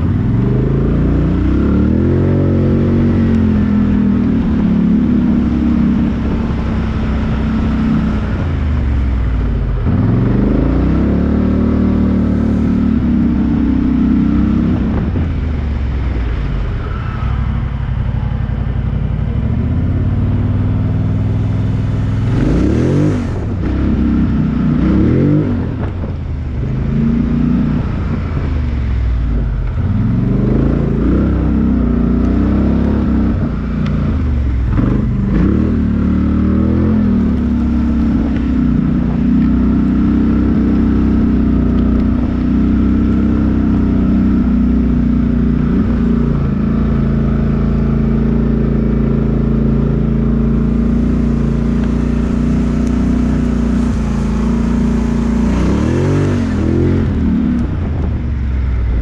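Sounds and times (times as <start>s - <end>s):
off-road engine revving: 0.0s - 59.0s.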